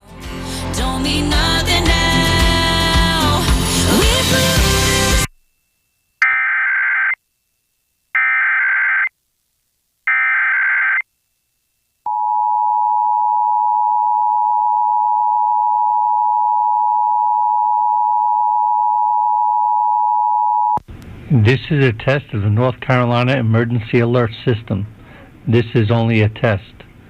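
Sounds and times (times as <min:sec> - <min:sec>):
warbling data tone bursts: 0:06.2 - 0:07.2.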